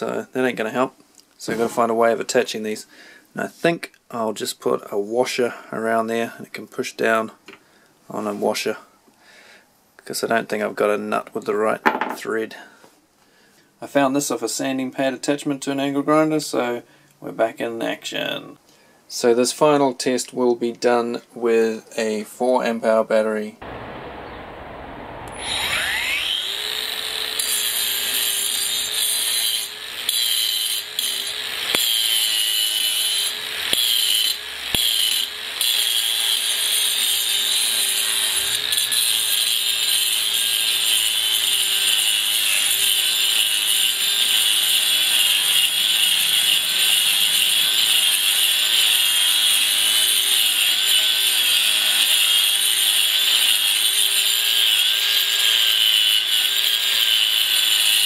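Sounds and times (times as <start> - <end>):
angle grinder grinding concrete: 25.3 - 58.0.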